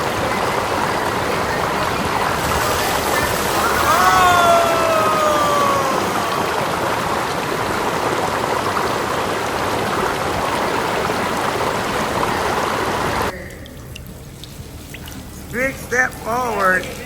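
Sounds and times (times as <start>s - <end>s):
slime pouring and splashing: 13.7s - 17.0s.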